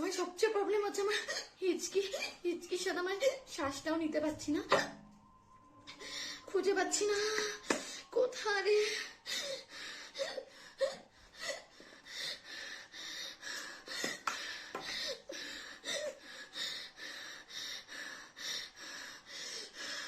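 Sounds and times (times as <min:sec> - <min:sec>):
woman panting in sharp gasps: 0:08.8 - 0:20.0.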